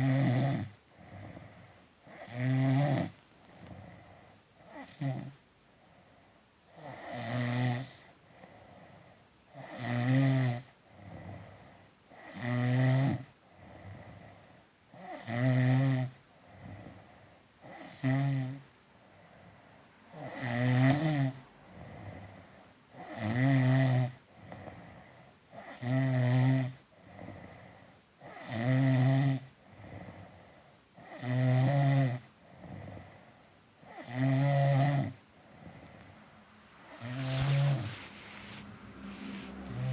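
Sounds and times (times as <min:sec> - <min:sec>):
loud rattling snores: 0:00.0 - 0:04.0, 0:04.7 - 0:05.4, 0:06.8 - 0:08.1, 0:09.5 - 0:11.5, 0:12.1 - 0:14.3, 0:14.9 - 0:17.0, 0:17.6 - 0:18.7, 0:20.1 - 0:22.4, 0:23.0 - 0:30.4, 0:31.0 - 0:36.0, 0:39.6 - 0:39.9
soft breaths: 0:00.7 - 0:02.3, 0:03.2 - 0:06.7, 0:08.0 - 0:09.5, 0:10.7 - 0:12.1, 0:16.2 - 0:17.6, 0:18.7 - 0:20.1, 0:24.2 - 0:25.6, 0:32.3 - 0:33.8, 0:35.0 - 0:39.9.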